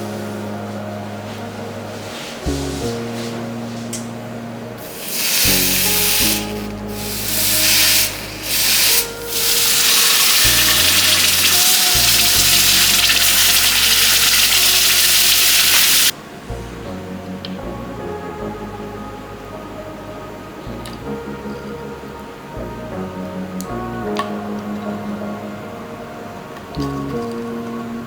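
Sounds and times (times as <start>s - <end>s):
background music: 0.0s - 28.0s
hot metal hissing on ice: 4.8s - 16.1s.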